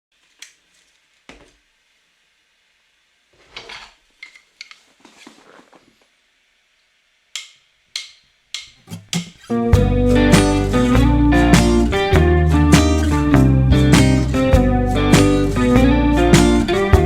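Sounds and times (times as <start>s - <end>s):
dish scraping: 3.4s - 6.0s
rustling handling: 4.3s - 6.1s.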